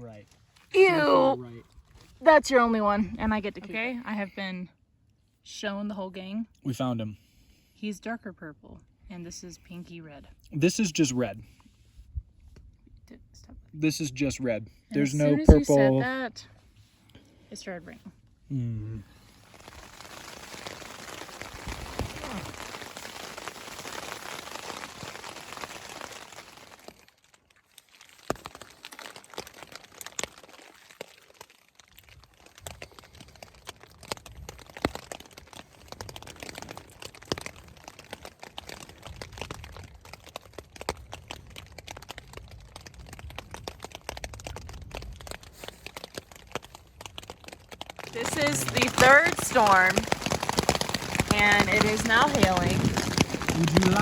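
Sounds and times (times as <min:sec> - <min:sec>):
rain hissing: 0:19.1 - 0:26.8, 0:48.0 - 0:54.0
drops or hail ticking: 0:19.6 - 0:26.9, 0:32.2 - 0:54.0.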